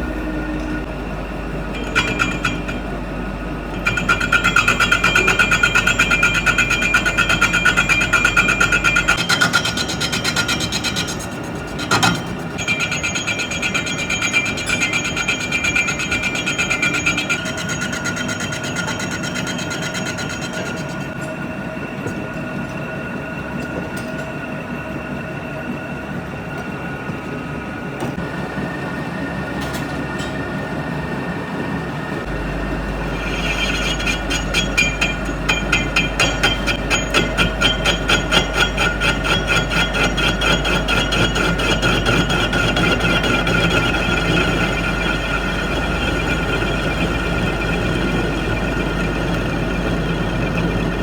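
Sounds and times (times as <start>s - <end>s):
machine whine: 0.0s - 51.0s
workshop machinery clattering: 0.6s - 21.4s, 32.2s - 51.0s.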